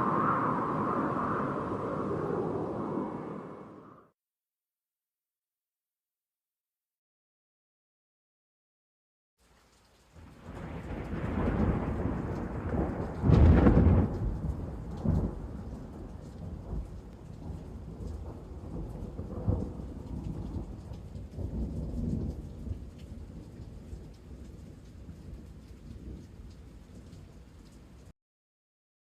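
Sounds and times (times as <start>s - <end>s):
wind blowing in gusts: 0.0s - 4.1s.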